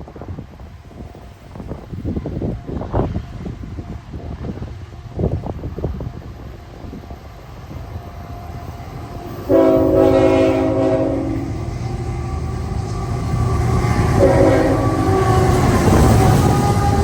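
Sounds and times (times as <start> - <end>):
train rumbling: 0.0 - 17.0
locomotive air horn blasts: 8.2 - 11.7, 14.0 - 15.8.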